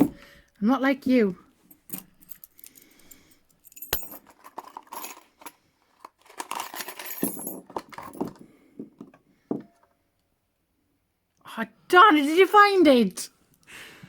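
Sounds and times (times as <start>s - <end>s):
small metal objects clinking: 1.7s - 8.4s.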